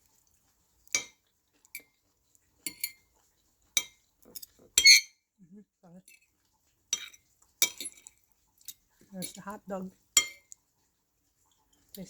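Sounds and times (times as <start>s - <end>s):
cutlery clinking against a dish: 0.9s - 2.0s, 2.6s - 3.1s, 3.7s - 5.2s, 6.0s - 6.3s, 6.9s - 9.5s, 10.2s - 10.6s.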